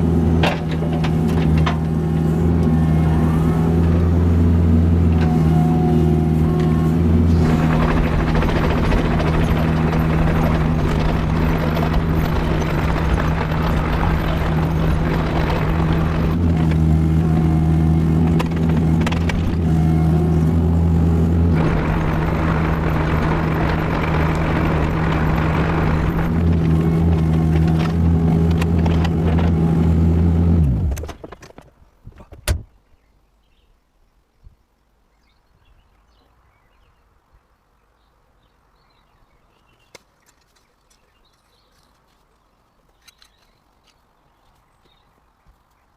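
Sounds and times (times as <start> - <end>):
excavator diesel engine running: 0.0 - 31.1.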